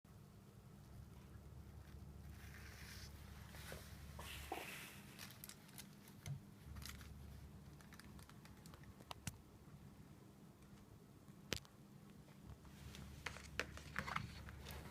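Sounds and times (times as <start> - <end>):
low steady hum: 0.1 - 14.9
soft rustles: 1.1 - 7.4.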